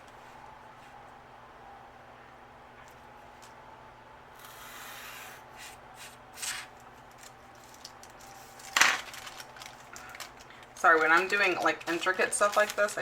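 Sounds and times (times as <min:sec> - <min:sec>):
paper rustling: 0:06.4 - 0:13.0.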